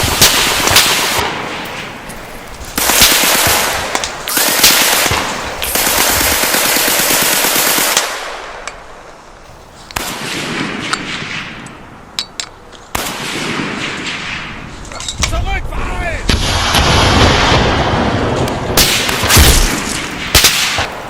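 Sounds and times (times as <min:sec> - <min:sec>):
automatic machine-gun fire: 0:02.8 - 0:08.0.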